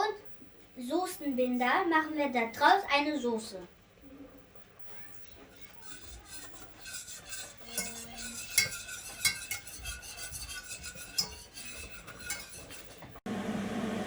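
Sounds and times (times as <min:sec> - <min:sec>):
utensil clinking and scraping pot: 0:04.9 - 0:13.2.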